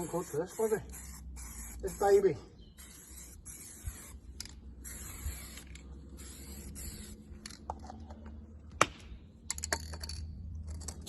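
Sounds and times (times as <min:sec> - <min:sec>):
aerosol spray paint hissing: 0:00.0 - 0:07.3.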